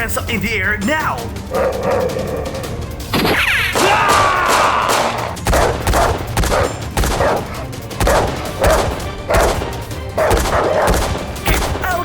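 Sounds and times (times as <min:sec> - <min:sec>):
gunshots with short echo: 0:03.2 - 0:12.0.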